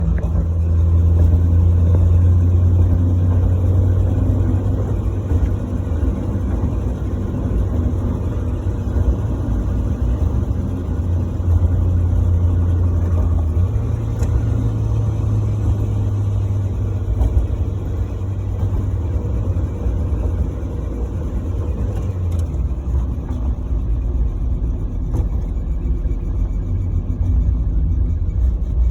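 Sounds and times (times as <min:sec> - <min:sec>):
car engine low drone: 0:00.0 - 0:28.9.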